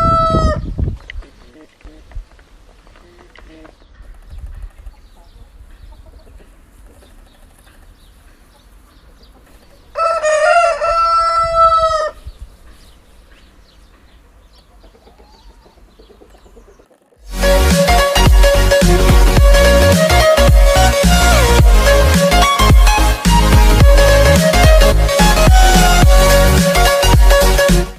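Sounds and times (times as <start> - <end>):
faint farmyard background: 0.0 - 27.9
rooster crowing: 10.0 - 12.2
loud electronic music: 17.3 - 27.9.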